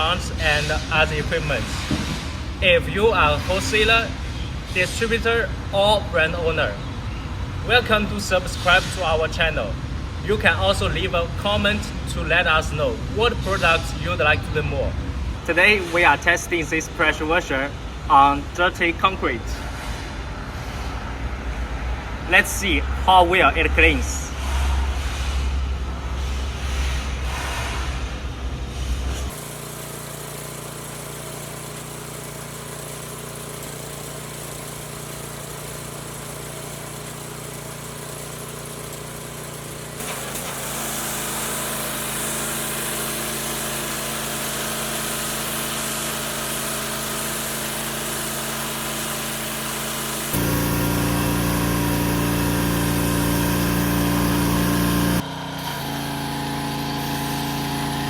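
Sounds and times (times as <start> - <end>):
pressure washer hum: 29.2 - 58.0
foam spraying: 29.3 - 55.2
water jet hissing on concrete: 29.3 - 55.2.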